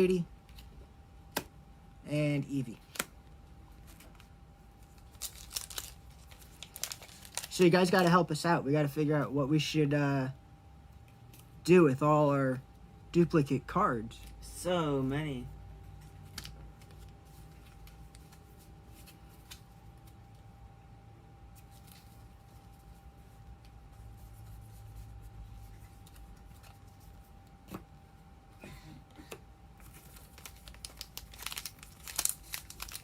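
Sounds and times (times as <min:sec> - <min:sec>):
faint steady hum: 0:00.0 - 0:33.0
handling trading cards: 0:02.4 - 0:08.4, 0:14.1 - 0:20.5, 0:21.5 - 0:27.8, 0:29.8 - 0:33.0
wrapper crinkling and tearing: 0:04.8 - 0:08.1, 0:29.8 - 0:33.0.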